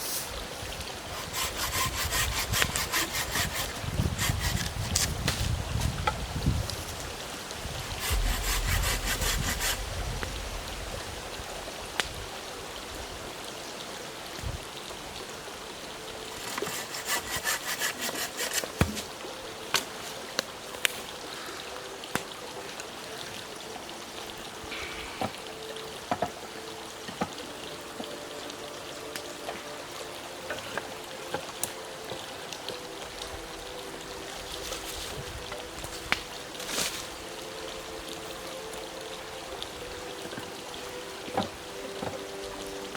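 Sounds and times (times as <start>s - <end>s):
hand saw cutting wood: 1.1s - 5.4s, 7.8s - 9.8s, 16.3s - 19.1s.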